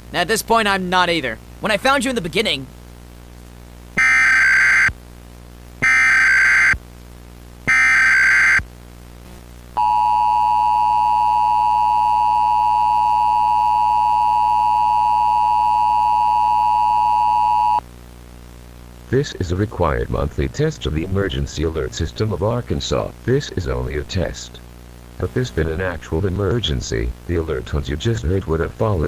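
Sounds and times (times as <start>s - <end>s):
data burst tones: 4.0s - 4.9s, 5.8s - 6.8s, 7.7s - 8.6s, 9.8s - 17.8s
steady two-tone alert signal: 4.0s - 4.9s, 5.8s - 6.8s, 7.7s - 8.6s, 9.8s - 17.8s.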